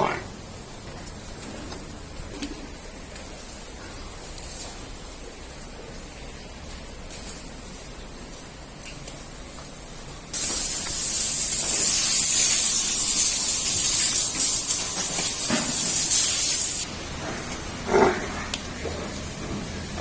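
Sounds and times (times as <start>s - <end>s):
loud spraying hiss: 10.4s - 16.8s.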